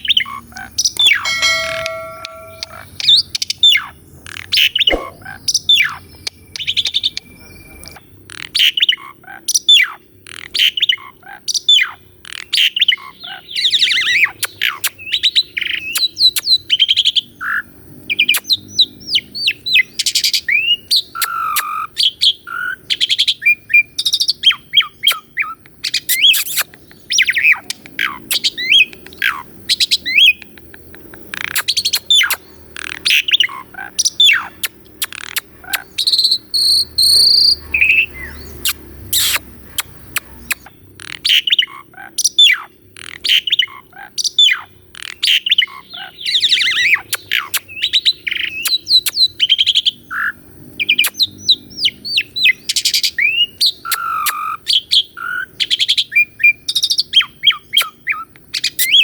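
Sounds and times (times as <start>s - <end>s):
starling singing: 0.0s - 3.2s.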